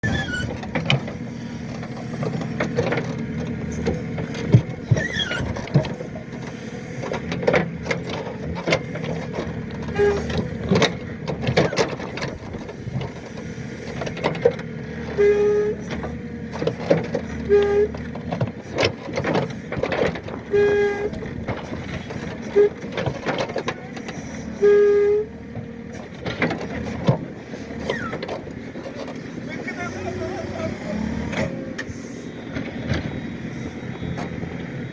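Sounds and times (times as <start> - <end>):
short pitched squeals: 0.0 - 0.6
diesel engine running: 0.0 - 34.9.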